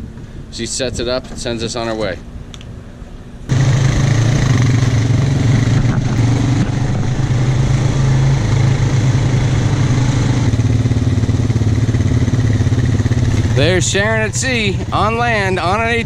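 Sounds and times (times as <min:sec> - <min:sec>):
atv engine running: 0:03.5 - 0:16.0.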